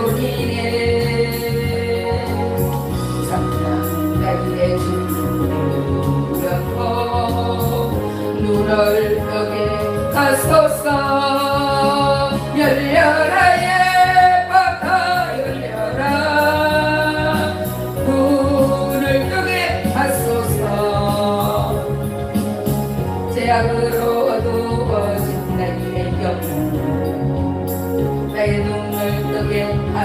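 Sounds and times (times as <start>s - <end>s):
solo voice singing: 0.0s - 22.2s
instrumental accompaniment with bass: 0.0s - 30.0s.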